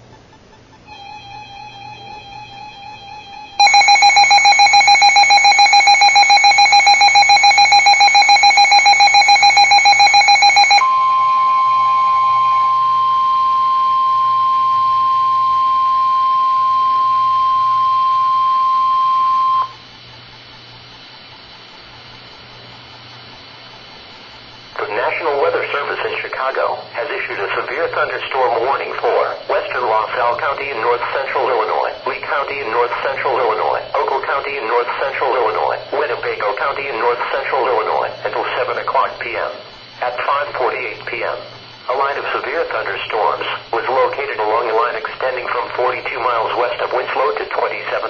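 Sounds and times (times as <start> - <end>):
faint radio hiss and hum: 0.0 - 48.0
electronic alarm beeps: 0.9 - 19.8
steady alarm tone: 0.9 - 48.0.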